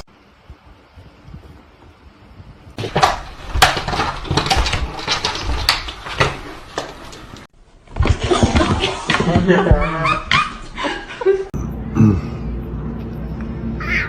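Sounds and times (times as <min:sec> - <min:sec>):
hard objects clattering: 0:02.8 - 0:09.6.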